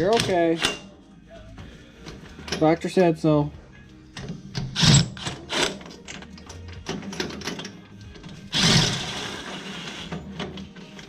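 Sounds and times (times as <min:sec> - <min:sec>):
hand tools clattering on metal: 0:02.1 - 0:03.0.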